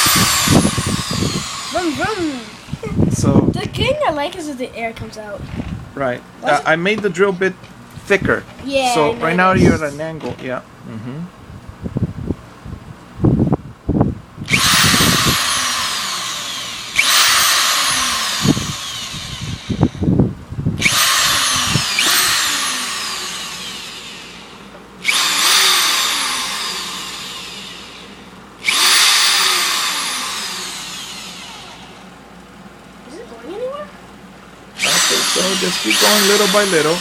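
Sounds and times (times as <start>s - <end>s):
power drill whine: 0.0s - 2.8s, 14.5s - 20.2s, 20.8s - 32.2s, 34.8s - 37.0s.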